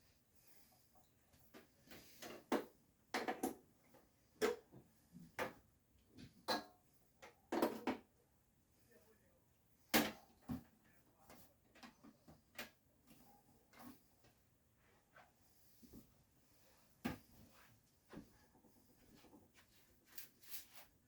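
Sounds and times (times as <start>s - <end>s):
objects knocking and clattering: 1.5s - 8.2s.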